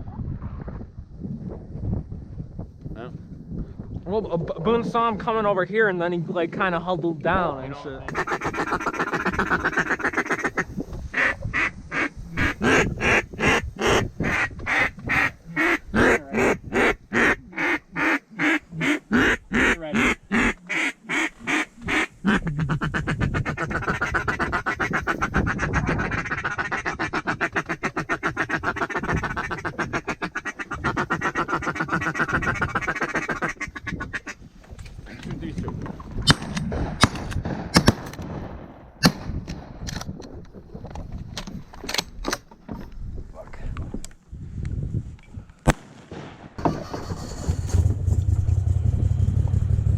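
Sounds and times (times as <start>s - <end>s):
duck call quacks: 8.1s - 34.4s.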